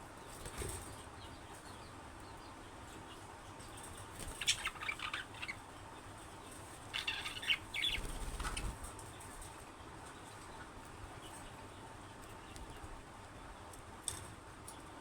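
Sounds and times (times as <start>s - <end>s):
budgerigars chirping and squawking: 3.8s - 6.1s, 6.9s - 8.8s.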